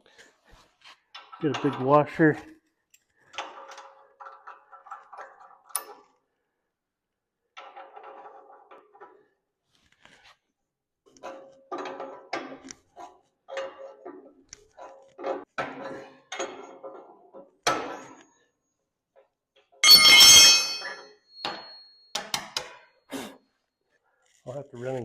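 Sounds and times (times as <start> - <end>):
loud ringing metallic clang: 19.8 - 21.8
metallic clinks of hand tools: 19.8 - 22.4.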